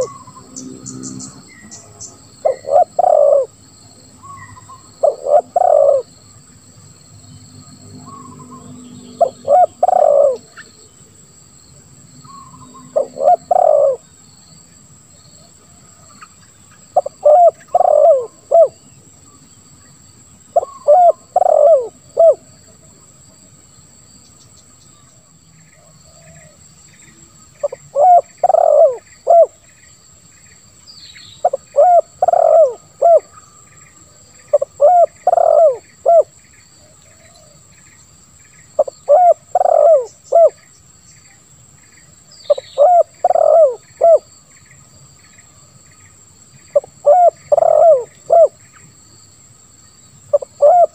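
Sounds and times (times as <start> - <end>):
dove cooing: 0.0 - 0.6, 2.4 - 3.6, 4.2 - 6.1, 9.2 - 10.7, 12.5 - 14.0, 17.0 - 18.8, 20.6 - 22.4, 27.6 - 29.6, 31.4 - 33.4, 34.4 - 36.3, 38.8 - 40.6, 42.5 - 44.3, 46.7 - 48.6, 50.3 - 50.9.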